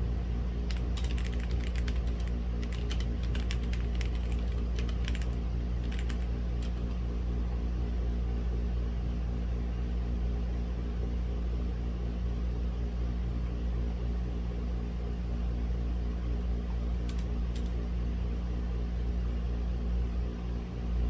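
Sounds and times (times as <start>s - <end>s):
low mechanical hum: 0.0s - 21.0s
faint clicks: 0.7s - 7.0s, 17.1s - 17.8s.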